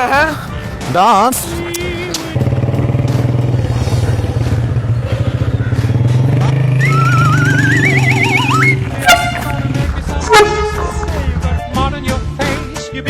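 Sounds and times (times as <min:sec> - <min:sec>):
low-pitched vehicle drone: 0:01.5 - 0:12.4
rising warbling tone: 0:06.8 - 0:09.9.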